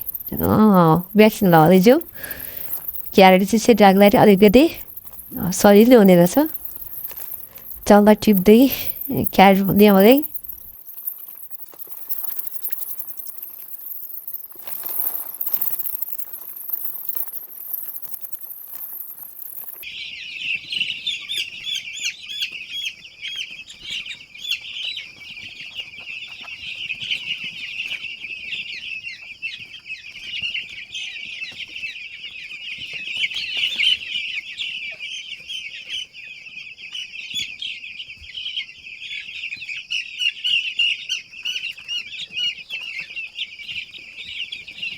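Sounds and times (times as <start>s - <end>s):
chicks peeping: 0.0s - 19.8s.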